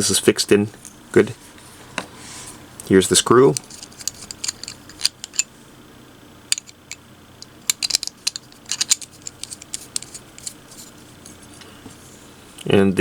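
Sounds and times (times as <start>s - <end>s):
small metal parts clicking: 3.5s - 5.5s, 6.5s - 11.4s.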